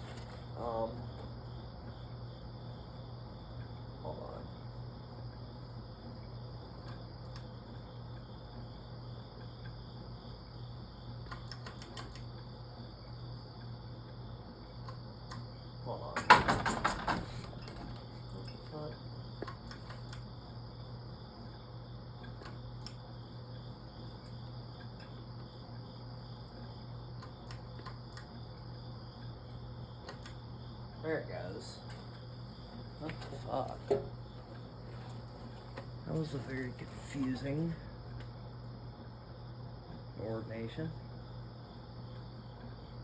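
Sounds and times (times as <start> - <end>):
ceiling fan motor humming: 0.0 - 43.0
sharp clicks: 11.2 - 12.3, 30.0 - 30.4
light clicks: 30.0 - 30.4.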